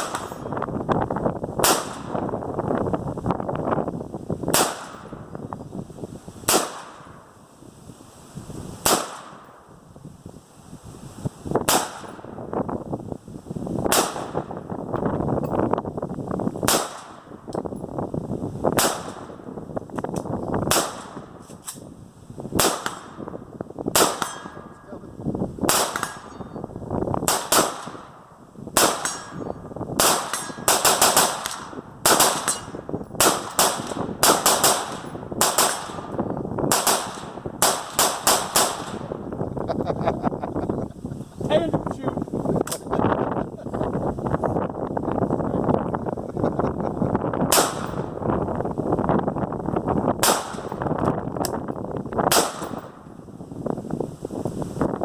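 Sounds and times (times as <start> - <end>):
rifle shots: 0.0 - 0.6, 1.6 - 2.3, 4.5 - 5.3, 6.5 - 7.2, 8.8 - 9.6, 11.7 - 12.3, 13.9 - 14.6, 16.6 - 17.3, 18.7 - 19.5, 20.7 - 21.8, 22.6 - 23.3, 23.9 - 24.8, 25.7 - 26.4, 27.2 - 39.2, 47.5 - 48.2, 50.2 - 50.9, 52.3 - 53.0.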